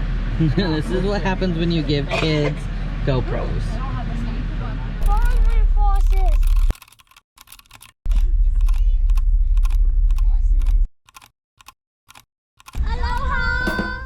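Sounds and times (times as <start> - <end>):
deep rumbling handling noise: 7.5 - 10.9.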